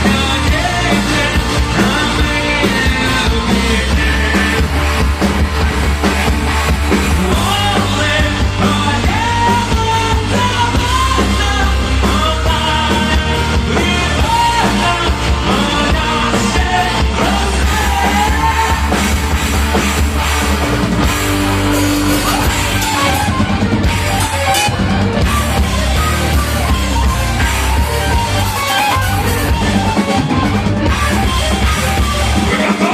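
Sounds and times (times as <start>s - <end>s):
heavy metal band playing: 0.0s - 32.9s
wavering melody line: 21.7s - 32.8s.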